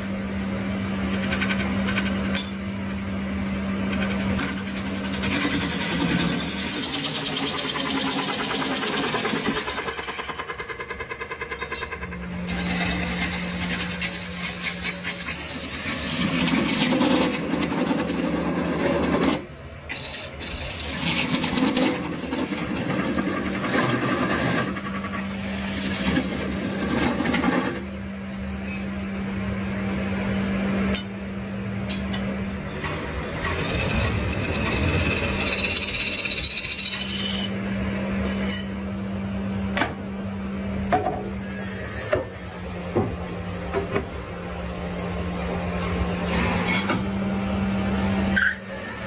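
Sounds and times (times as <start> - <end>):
low motor hum: 11.4 - 41.4
scraping and rubbing on wood: 12.5 - 27.8.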